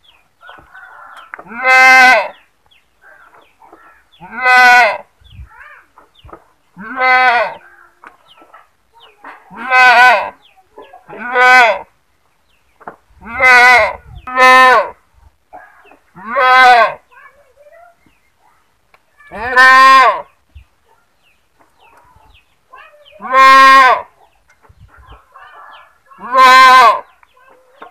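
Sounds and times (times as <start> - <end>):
goat bleating: 6.8 - 7.6, 9.5 - 10.4, 16.2 - 17.0, 19.2 - 20.3, 23.1 - 24.1, 26.2 - 27.1.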